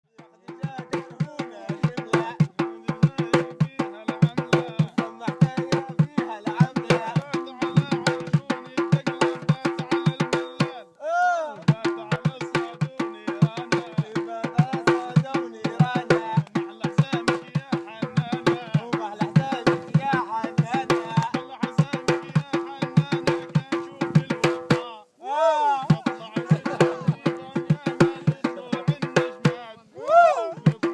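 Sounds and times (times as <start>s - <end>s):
hand drums playing fast rhythm: 0.2s - 10.8s, 11.6s - 25.0s, 25.8s - 29.7s, 30.4s - 30.9s
rising and falling voice call: 29.8s - 30.8s.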